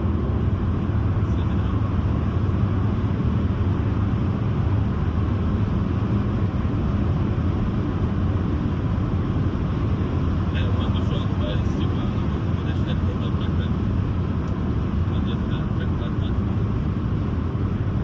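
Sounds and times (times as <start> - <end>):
car engine drone: 0.0 - 18.0
tyre road noise: 0.0 - 18.0.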